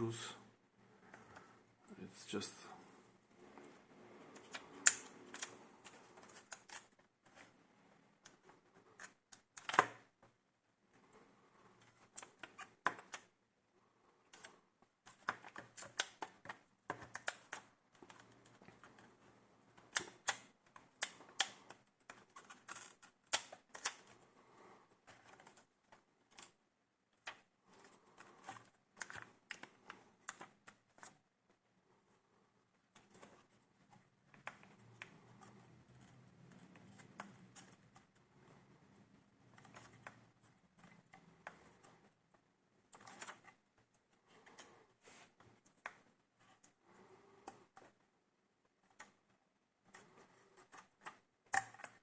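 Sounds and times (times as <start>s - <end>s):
plastic laptop parts clicking: 4.3s - 7.5s, 8.2s - 10.3s, 11.8s - 13.3s, 14.3s - 24.2s, 25.0s - 31.2s, 32.9s - 48.0s, 49.8s - 52.0s.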